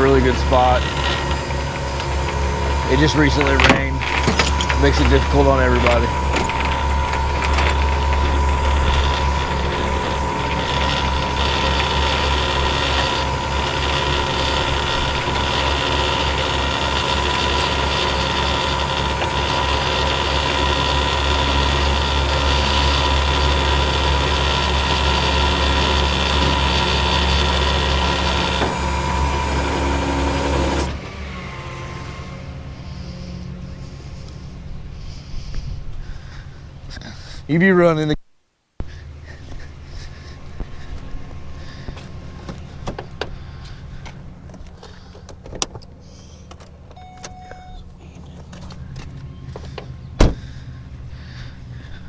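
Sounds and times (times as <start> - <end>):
hydraulic hiss: 0.0 - 35.9
hydraulic whine: 0.0 - 37.1, 38.8 - 52.0
truck engine drone: 0.0 - 37.8, 38.8 - 52.0.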